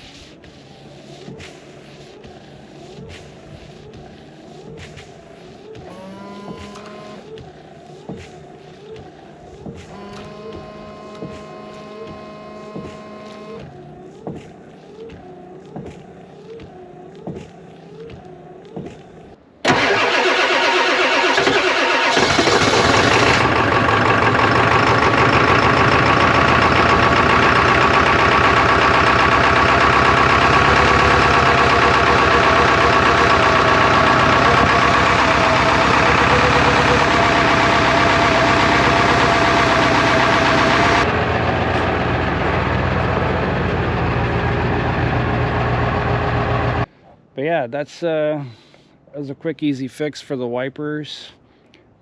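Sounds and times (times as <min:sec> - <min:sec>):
truck engine cranking and idling: 0:19.6 - 0:46.9.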